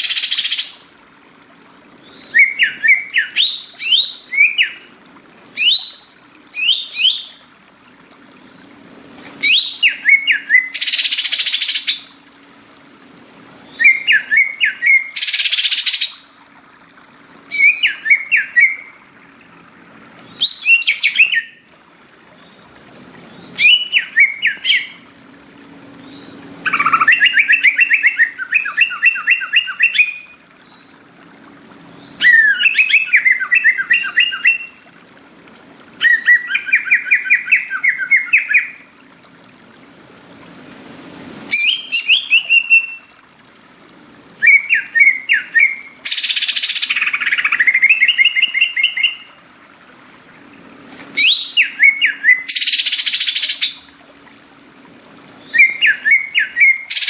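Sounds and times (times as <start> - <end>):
bird singing chattering whistles: 2.1 - 4.8, 5.6 - 7.4, 13.7 - 16.2, 20.3 - 21.6, 23.6 - 25.0, 26.1 - 30.3, 41.5 - 43.1, 51.2 - 53.8, 55.4 - 57.0.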